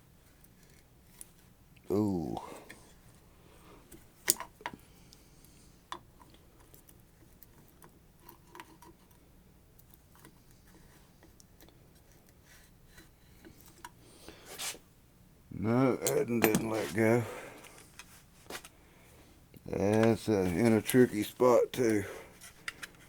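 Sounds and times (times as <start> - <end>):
hand tools clicking on metal: 16.0 - 17.0.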